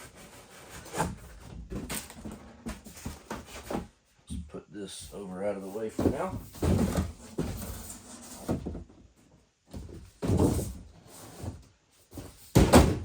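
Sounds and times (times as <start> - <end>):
cardboard box sliding and bumping: 6.0 - 8.8.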